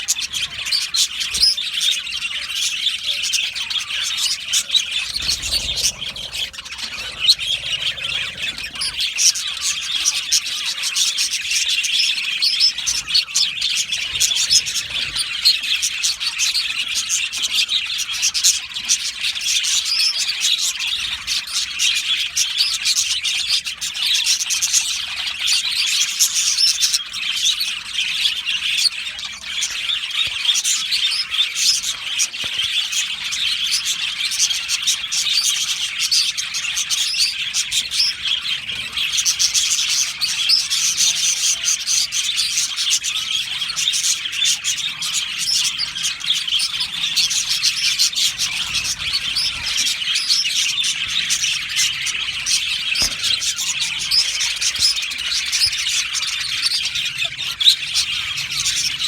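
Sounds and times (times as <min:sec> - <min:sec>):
bird squawks: 0:00.0 - 0:59.0
budgerigars chirping: 0:00.0 - 0:59.0.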